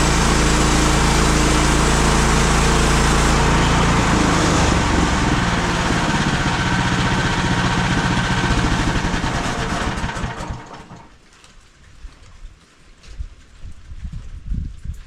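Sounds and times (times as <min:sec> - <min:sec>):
gasoline engine running: 0:00.0 - 0:11.1.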